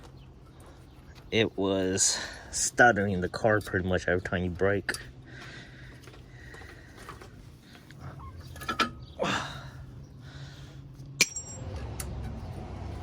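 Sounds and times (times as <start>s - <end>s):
metal clinks and scrapes: 8.1s - 9.0s, 11.1s - 12.5s
sharp ringing metal clink: 11.2s - 11.7s.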